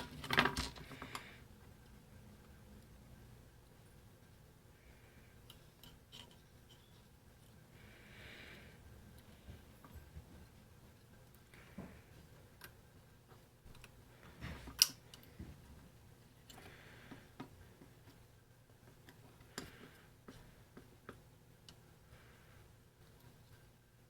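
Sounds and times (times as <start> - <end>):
faint low hum: 0.0 - 24.0
small tools clicking and tapping: 5.4 - 7.6.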